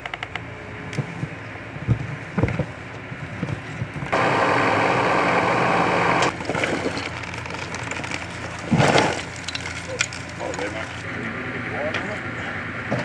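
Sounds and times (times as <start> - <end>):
electric winch running: 4.1 - 6.4.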